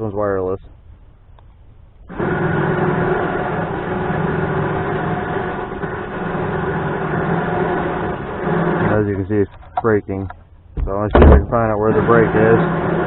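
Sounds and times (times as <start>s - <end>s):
electric winch motor whining: 2.0s - 9.4s, 11.5s - 13.0s.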